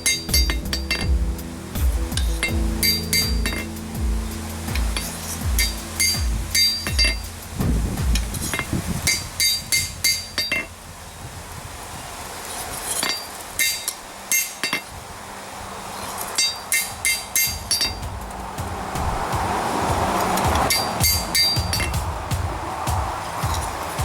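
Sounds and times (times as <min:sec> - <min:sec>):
hammer striking steel on anvil: 0:00.0 - 0:01.2, 0:02.1 - 0:03.7, 0:04.8 - 0:07.4.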